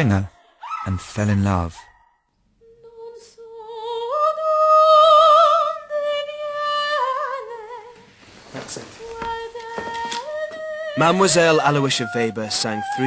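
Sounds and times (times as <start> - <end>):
woman singing operatic notes: 2.6 - 8.0, 9.0 - 11.2.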